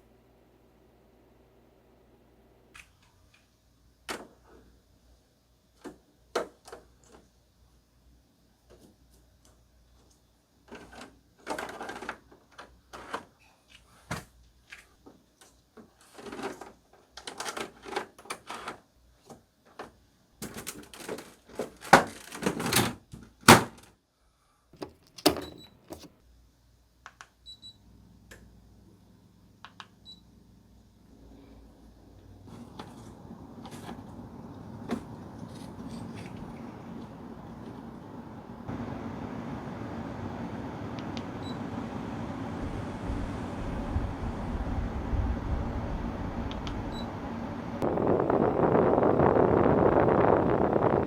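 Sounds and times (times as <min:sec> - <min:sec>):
air conditioner hum: 0:00.0 - 0:51.0
fan airflow rushing: 0:32.3 - 0:51.0.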